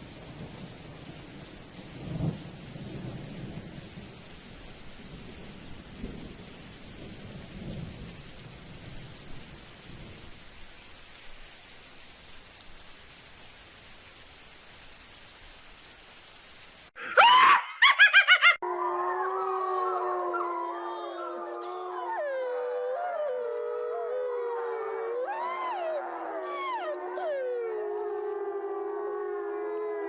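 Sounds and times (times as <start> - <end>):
rain hiss: 0.0 - 17.0, 19.6 - 30.0
pack of canines howling: 17.1 - 30.0.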